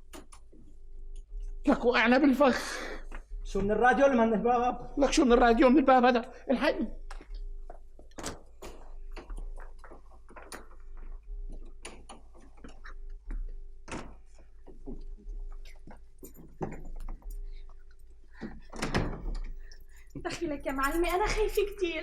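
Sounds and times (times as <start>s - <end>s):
low electrical hum: 0.0s - 22.0s
irregular knocks and clatters: 6.9s - 22.0s.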